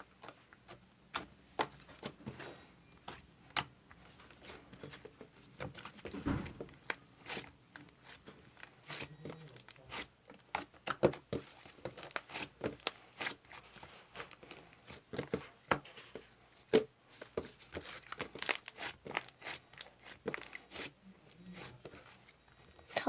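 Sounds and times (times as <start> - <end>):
slime popping and crackling: 5.7 - 13.6, 17.4 - 20.9.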